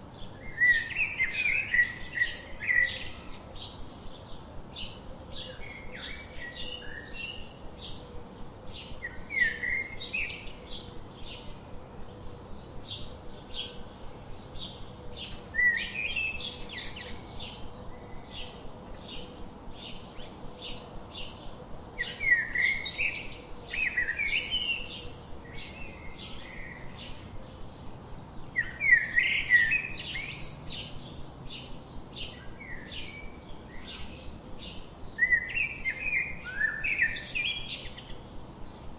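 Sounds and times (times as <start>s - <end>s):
songbirds chipping: 0.0s - 38.9s
bird twittering phrases: 27.8s - 31.0s.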